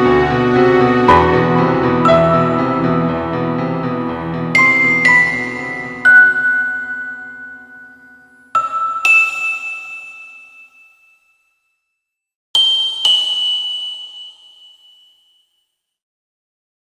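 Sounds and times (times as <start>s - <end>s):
bell-like chime notes: 4.6s - 12.0s, 12.6s - 15.8s.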